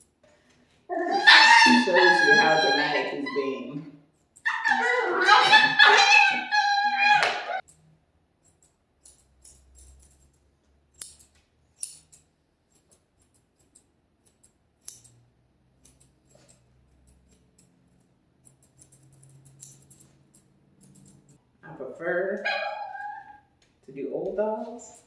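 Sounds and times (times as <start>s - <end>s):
scissors snipping fur: 8.4s - 21.4s.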